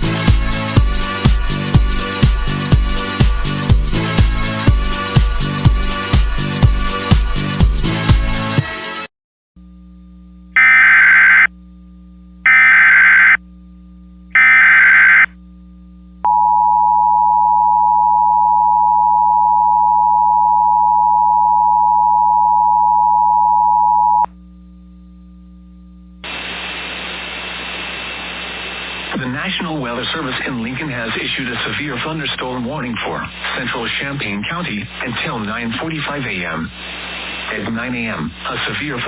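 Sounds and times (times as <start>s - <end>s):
digital data bursts: 10.6s - 11.5s, 12.5s - 13.4s, 14.4s - 15.3s
radio static hiss: 10.6s - 11.5s, 12.5s - 13.4s, 14.4s - 15.4s, 26.2s - 39.0s
steady attention tone: 10.6s - 11.5s, 12.5s - 13.4s, 14.4s - 15.4s, 16.2s - 24.3s.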